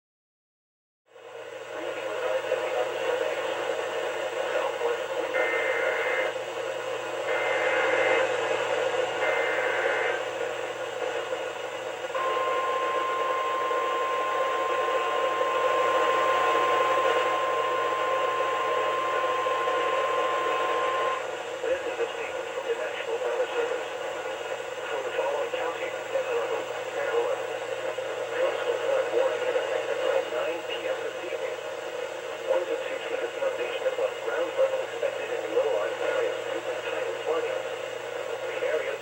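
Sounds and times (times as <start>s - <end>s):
static hiss: 4.4s - 6.4s, 7.1s - 21.3s
steady warning alarm tone: 5.3s - 6.4s, 7.2s - 10.8s, 12.1s - 21.3s
screechy digital data bursts: 7.3s - 8.4s, 9.2s - 10.3s.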